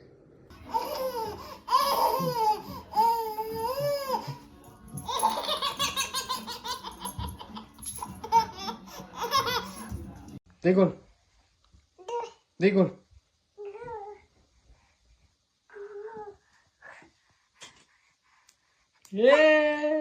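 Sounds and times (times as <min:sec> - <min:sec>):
baby laughing: 0:00.5 - 0:04.4, 0:05.0 - 0:09.9.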